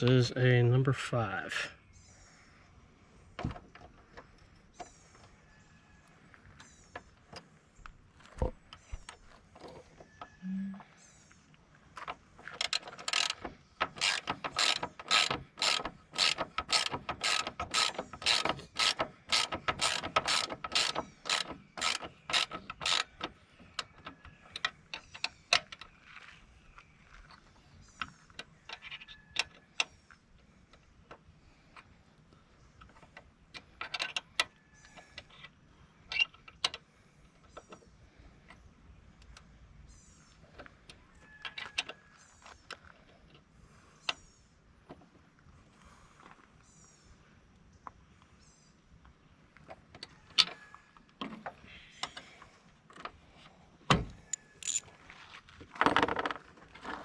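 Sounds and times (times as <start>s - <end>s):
ratchet wrench clicking: 12.6s - 23.9s, 54.3s - 54.8s
tool handling clicks and taps: 54.3s - 54.8s.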